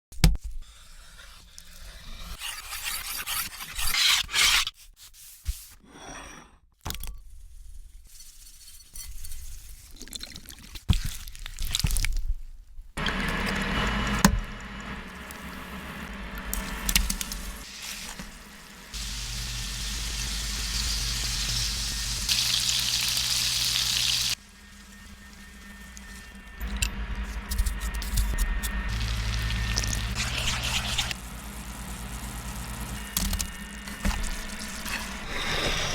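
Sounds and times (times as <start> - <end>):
rubbing and scraping of meat: 17.0 - 26.3, 28.2 - 31.2.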